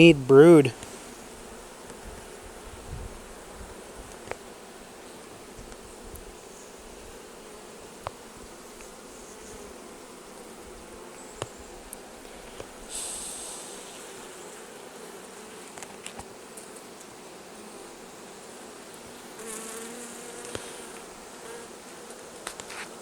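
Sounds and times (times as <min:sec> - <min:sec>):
honeybees buzzing: 0:00.0 - 0:23.0
brief hiss: 0:12.8 - 0:14.1.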